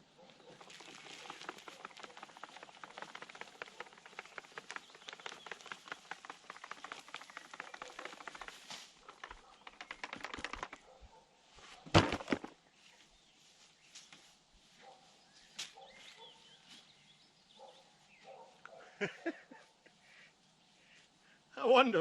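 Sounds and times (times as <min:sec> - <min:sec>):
grass clippings rustling: 0:00.4 - 0:10.8, 0:11.6 - 0:16.9.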